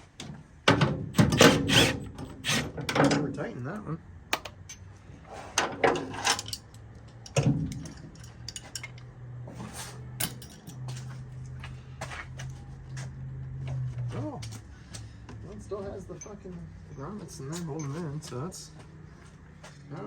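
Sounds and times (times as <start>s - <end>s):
metal clicks of hand tools: 4.3s - 4.8s.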